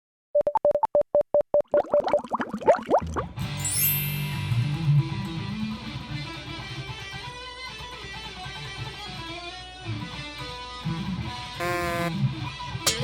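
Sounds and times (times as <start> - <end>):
electric guitar music: 4.3 - 13.0
bass line: 11.6 - 12.2.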